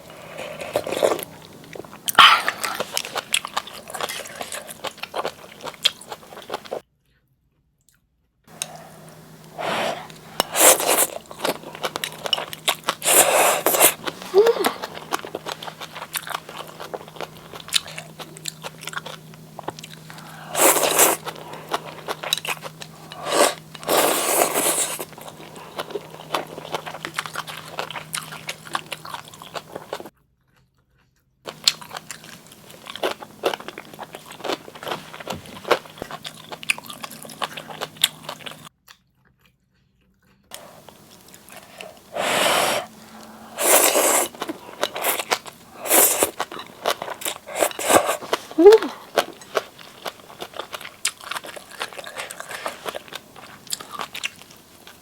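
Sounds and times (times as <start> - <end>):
wet chewing: 0.0 - 6.8, 8.5 - 30.7, 31.5 - 55.0
breathy bursts: 8.6 - 10.9, 20.1 - 21.8, 41.5 - 46.0.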